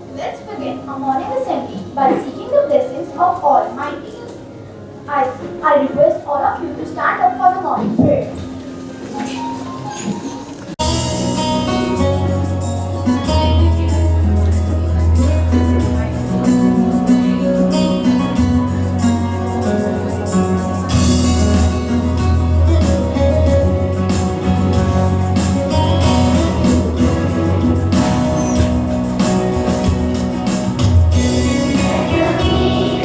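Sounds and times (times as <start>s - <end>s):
instrumental music with bass and beat: 10.8s - 33.0s.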